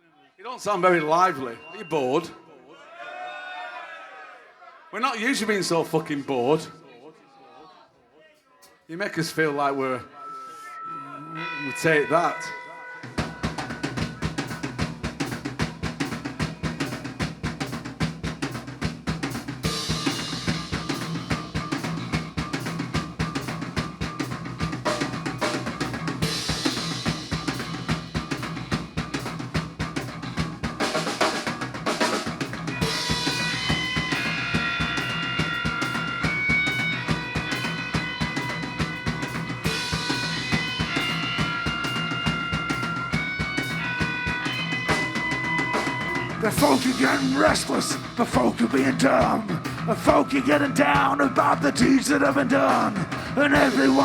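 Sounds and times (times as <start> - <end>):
held high melodic notes: 9.1 - 15.4
rock band playing: 11.4 - 54.0
drum kit beat: 13.0 - 54.0.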